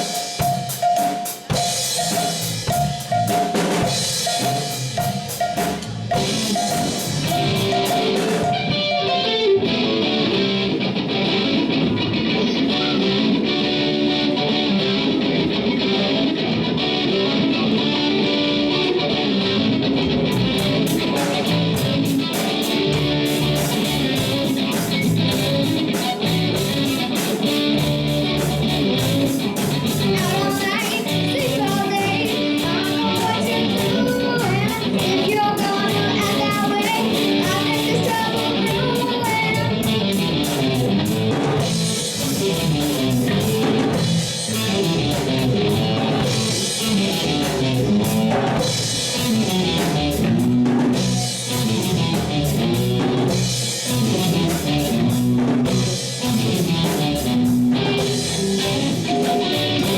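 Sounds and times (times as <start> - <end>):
steady cymbal beat: 0.0 - 8.7
rock band playing: 0.0 - 59.9.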